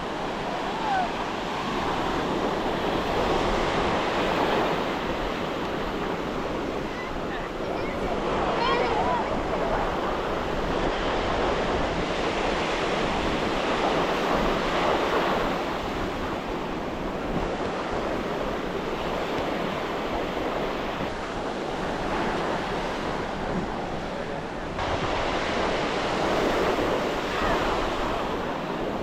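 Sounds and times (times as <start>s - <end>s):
ocean surf on beach: 0.0s - 29.0s
wind on microphone: 0.0s - 29.0s.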